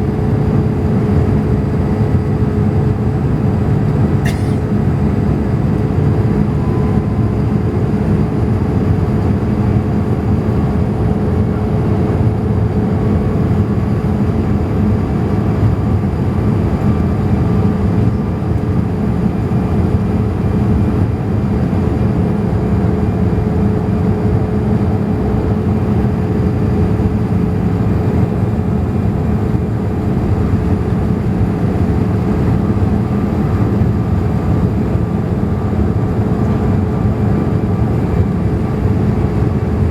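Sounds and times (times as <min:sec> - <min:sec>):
aircraft cabin engine rumble: 0:00.0 - 0:39.9
steady droning tone: 0:06.1 - 0:09.8.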